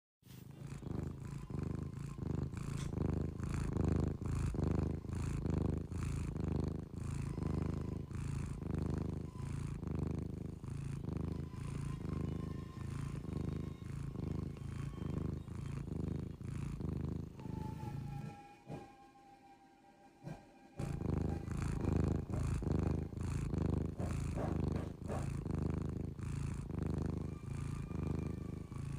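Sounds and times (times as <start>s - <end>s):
cat purring: 0.2s - 19.1s, 20.1s - 28.9s.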